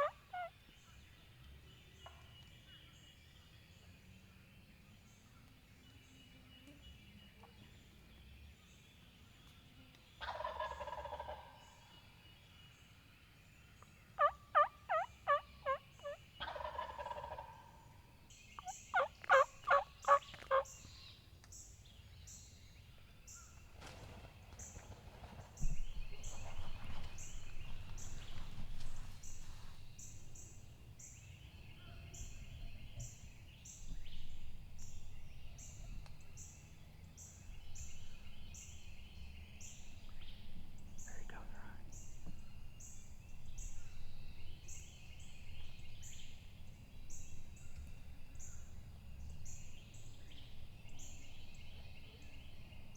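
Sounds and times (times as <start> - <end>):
turkey gobbling: 0.0 - 0.5, 10.3 - 11.6, 14.2 - 17.8, 18.6 - 20.7
turkey calls and yelps: 0.0 - 0.6, 10.2 - 11.6, 14.2 - 17.8, 18.6 - 20.8
faint songbird chirps: 0.0 - 52.9
rustling noise: 23.6 - 30.4.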